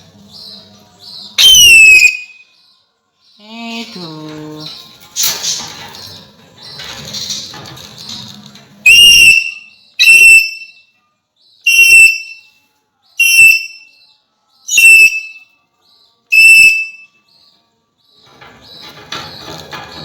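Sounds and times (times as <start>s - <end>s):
parakeet whistling: 1.4s - 2.4s, 8.9s - 10.8s, 11.7s - 12.4s, 13.2s - 13.9s, 14.7s - 15.4s, 16.3s - 17.1s.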